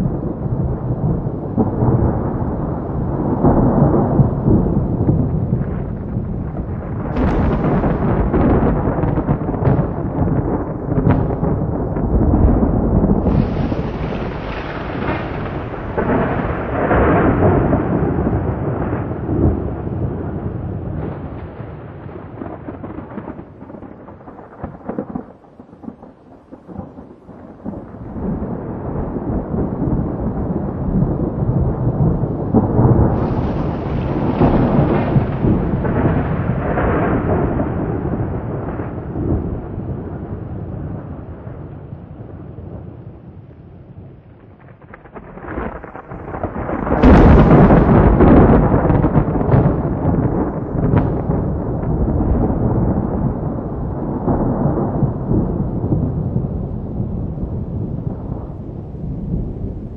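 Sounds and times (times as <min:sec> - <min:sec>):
rain falling: 0:00.0 - 0:59.9
thunder rumbling: 0:00.0 - 0:59.9.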